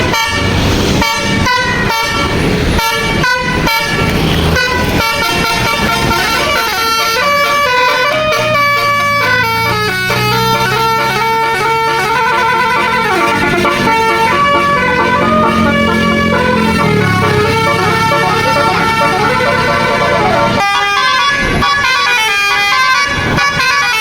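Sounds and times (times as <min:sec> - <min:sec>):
bus musical horn melody: 0:00.0 - 0:24.0.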